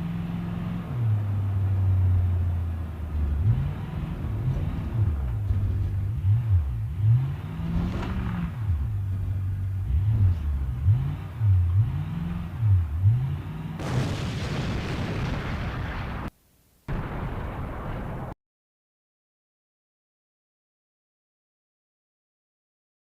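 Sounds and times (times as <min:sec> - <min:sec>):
rumble: 0:00.0 - 0:18.4.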